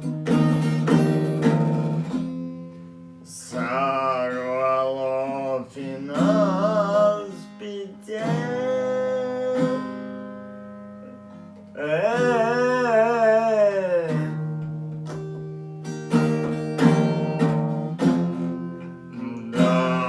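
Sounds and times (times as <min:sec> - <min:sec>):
strummed acoustic guitar: 0:00.0 - 0:20.0
man singing: 0:03.3 - 0:10.2, 0:11.8 - 0:14.6, 0:19.1 - 0:20.0.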